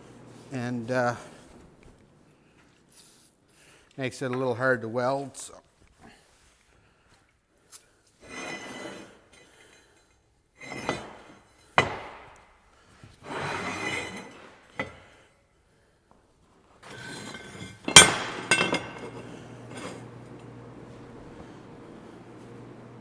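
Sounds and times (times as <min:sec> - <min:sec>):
steel scraping on metal: 0:08.2 - 0:09.6, 0:13.2 - 0:15.1, 0:16.8 - 0:20.1
ringing metal clanks: 0:17.4 - 0:20.0.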